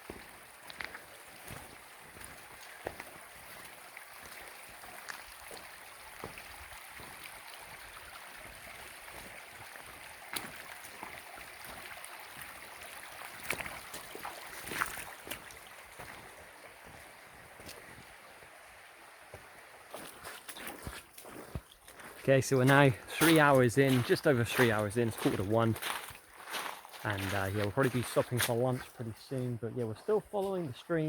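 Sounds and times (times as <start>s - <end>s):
stream flowing over rocks: 0.0s - 29.0s.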